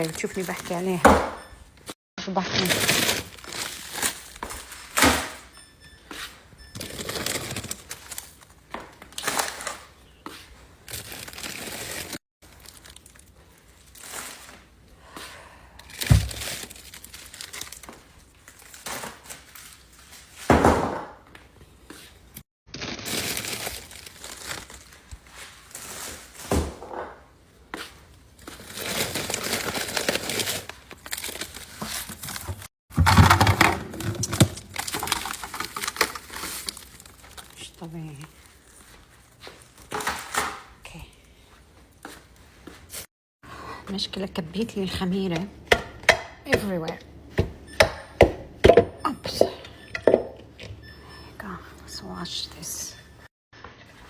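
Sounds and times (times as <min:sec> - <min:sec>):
plastic packaging crinkling: 0:00.0 - 0:01.0, 0:02.6 - 0:05.0, 0:06.8 - 0:10.0, 0:10.8 - 0:14.8, 0:15.8 - 0:20.5, 0:22.8 - 0:26.5, 0:27.8 - 0:40.8
items knocking when set down: 0:00.0 - 0:01.7, 0:02.8 - 0:05.6, 0:16.0 - 0:16.6, 0:20.4 - 0:21.3, 0:31.8 - 0:36.8.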